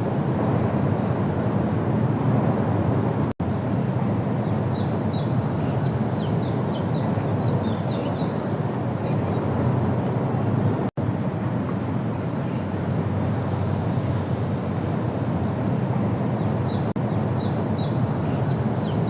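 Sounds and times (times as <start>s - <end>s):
low outdoor rumble: 0.0s - 19.0s
bird chirping: 4.4s - 9.5s, 16.4s - 19.0s.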